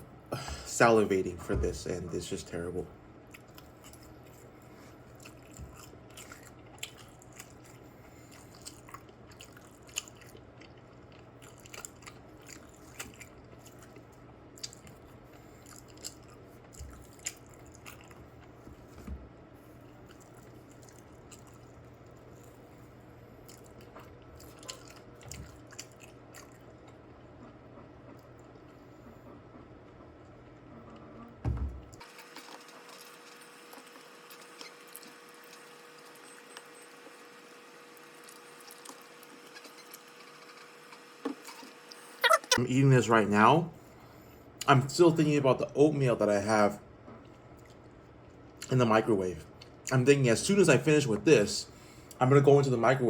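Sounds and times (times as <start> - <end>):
person chewing: 3.3 - 18.7, 19.8 - 22.7, 23.4 - 28.6.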